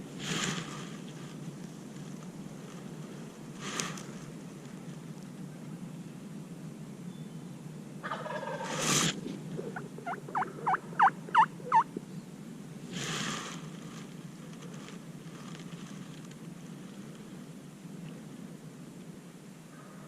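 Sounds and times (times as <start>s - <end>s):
turkey yelps: 8.0s - 8.7s, 9.7s - 11.9s
turkey gobbling: 8.0s - 8.8s, 9.6s - 11.9s.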